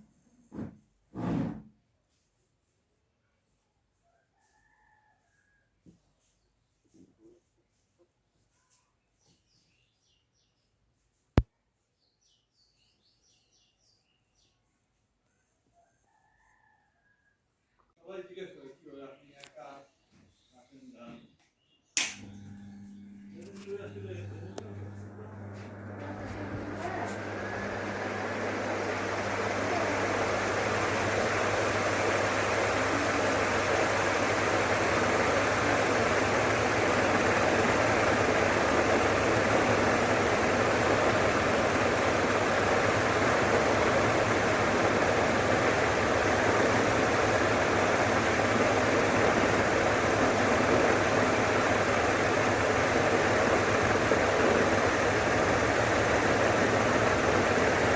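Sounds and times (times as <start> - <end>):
fan motor hum: 22.0 - 57.9
ceiling fan air rush: 23.1 - 57.9.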